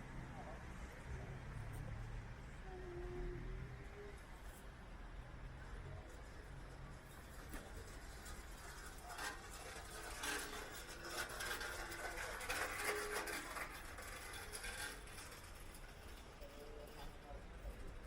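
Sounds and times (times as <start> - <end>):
faint traffic: 0.0 - 18.0.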